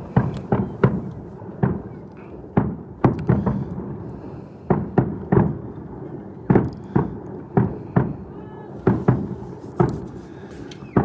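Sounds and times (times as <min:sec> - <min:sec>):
fireworks bursting: 0:00.0 - 0:11.0.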